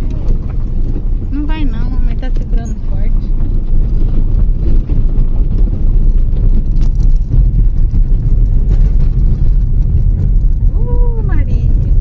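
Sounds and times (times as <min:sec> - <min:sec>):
vehicle driving rumble: 0:00.0 - 0:12.0.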